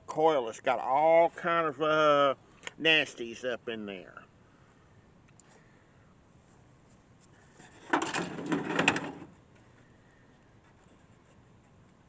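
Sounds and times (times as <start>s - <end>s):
rattling scrape: 7.5s - 9.3s.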